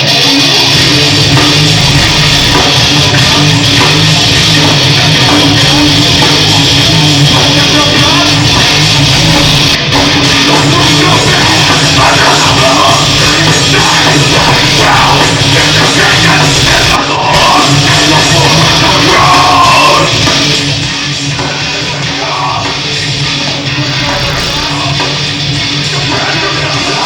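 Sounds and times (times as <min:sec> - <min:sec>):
heavy rock band playing: 0:00.0 - 0:27.0
shouted vocals: 0:10.5 - 0:20.3.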